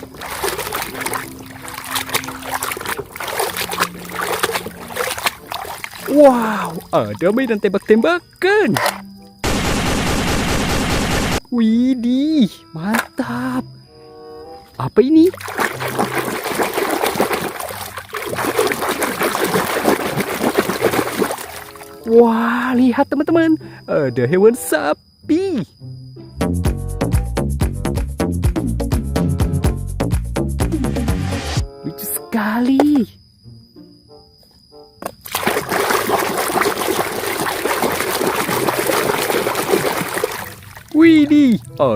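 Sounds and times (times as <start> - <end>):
water splashing in a tub: 0.0 - 8.1, 15.2 - 22.0, 35.2 - 41.8.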